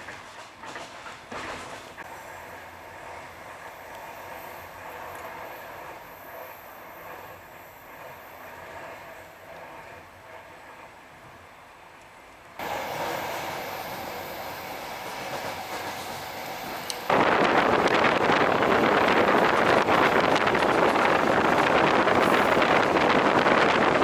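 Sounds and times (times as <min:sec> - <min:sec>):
wheels clattering on rails: 0:00.0 - 0:02.1, 0:12.6 - 0:24.0
moving train running noise: 0:00.0 - 0:24.0.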